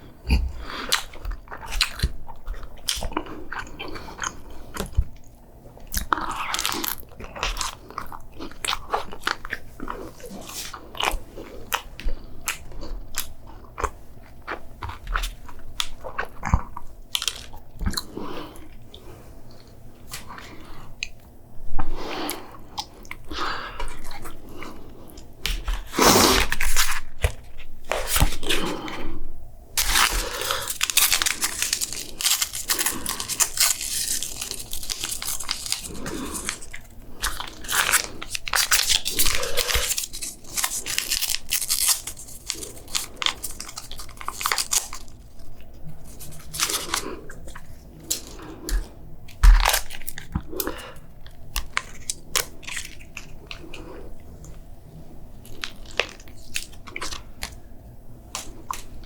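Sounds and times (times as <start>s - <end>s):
person biting and chewing food: 0.2s - 21.2s, 21.8s - 29.2s, 29.8s - 54.6s, 55.4s - 57.6s.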